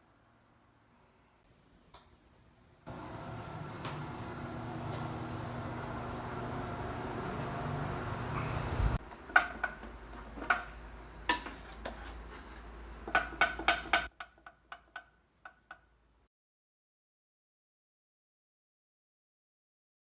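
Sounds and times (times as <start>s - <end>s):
exhaust fan whirring: 2.8s - 14.1s.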